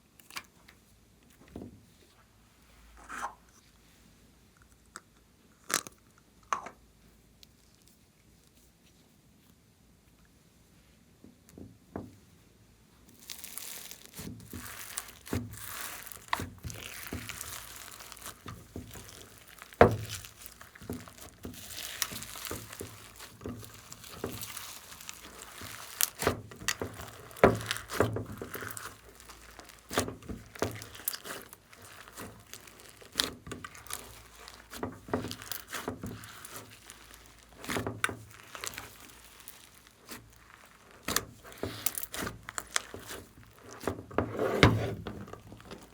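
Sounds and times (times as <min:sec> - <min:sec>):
slime crackling and popping: 0:13.1 - 0:45.9.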